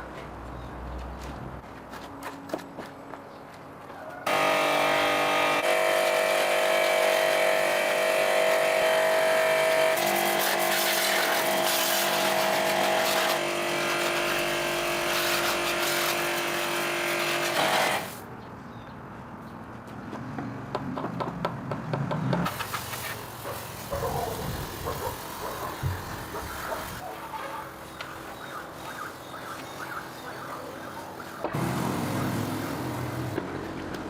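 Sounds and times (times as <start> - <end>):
motor running steadily: 4.3 - 18.1.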